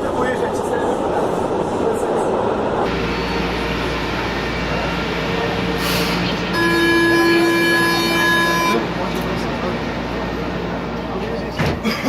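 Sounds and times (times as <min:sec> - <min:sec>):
metro train noise: 0:00.0 - 0:12.0
horn-like tone: 0:06.5 - 0:09.0.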